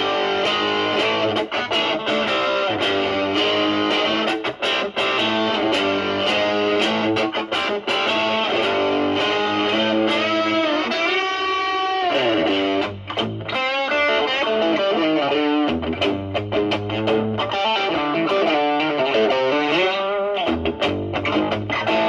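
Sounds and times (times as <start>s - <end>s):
distorted electric guitar lines: 0.0s - 22.0s.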